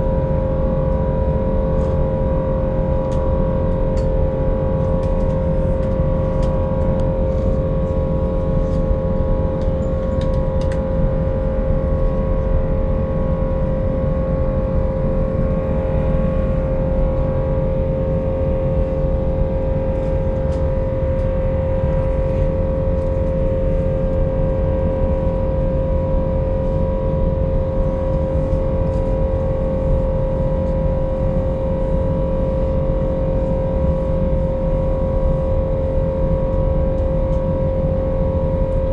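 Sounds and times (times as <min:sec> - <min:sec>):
airliner cabin engine rumble: 0:00.0 - 0:38.9
steady hum tone: 0:00.0 - 0:38.9.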